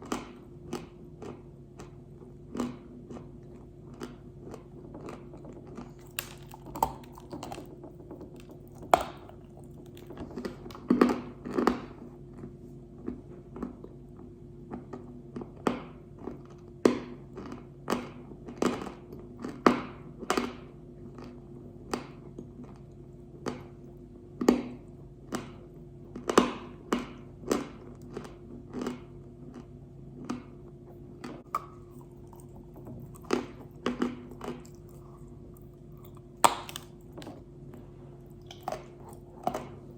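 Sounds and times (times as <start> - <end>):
steady low hum: 0.0 - 39.9
clay being crunched by chewing: 2.5 - 11.8, 31.2 - 37.4.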